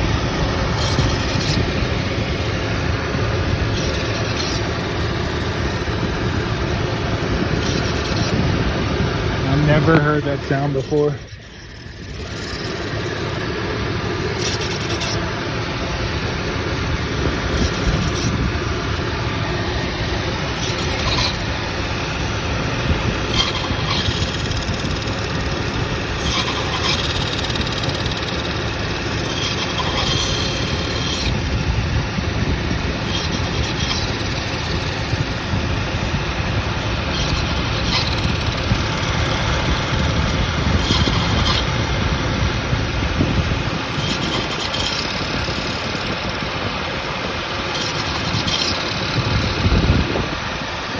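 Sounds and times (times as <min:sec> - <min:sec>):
car engine running: 0:00.0 - 0:44.1.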